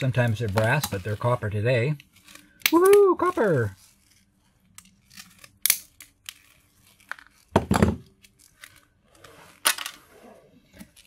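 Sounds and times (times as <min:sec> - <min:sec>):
heavy knock on workbench: 0:07.6 - 0:08.0.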